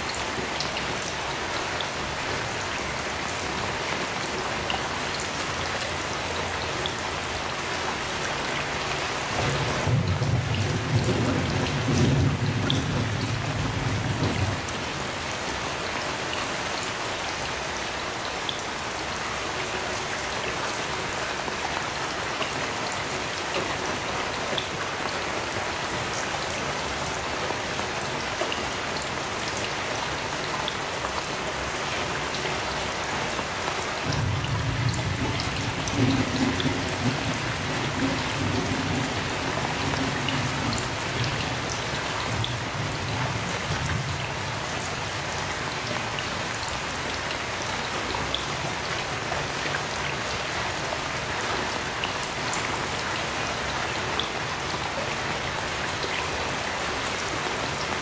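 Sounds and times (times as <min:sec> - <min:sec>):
heavy rain falling: 0:00.0 - 0:58.0
raindrops ticking on a surface: 0:00.0 - 0:58.0
distant thunder rumble: 0:09.4 - 0:15.0, 0:34.0 - 0:45.3.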